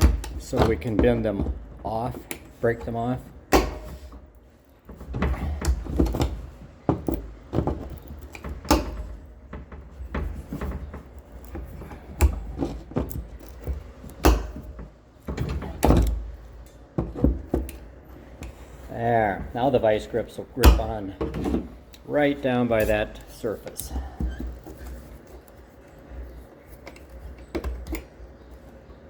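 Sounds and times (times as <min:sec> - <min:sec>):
tool clicking and knocking on metal: 0:00.0 - 0:18.6, 0:20.6 - 0:22.1.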